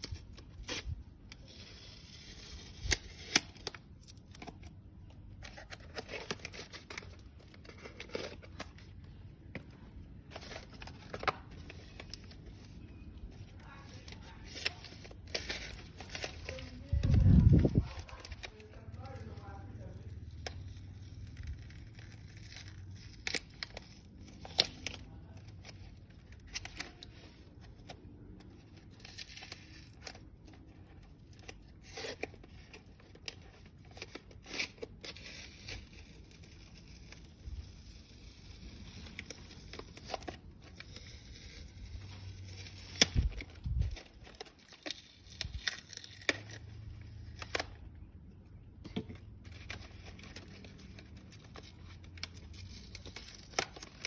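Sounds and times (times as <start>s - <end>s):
packaging crinkling and tearing: 0.0s - 54.0s.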